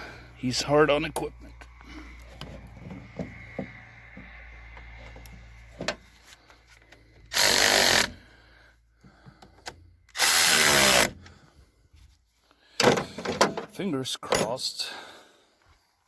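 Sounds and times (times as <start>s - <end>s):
power drill running: 7.3s - 8.2s, 10.1s - 11.2s.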